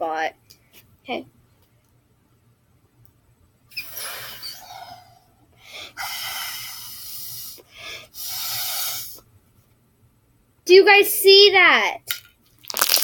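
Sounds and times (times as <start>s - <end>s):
breathy blowing into slime: 3.8s - 9.2s.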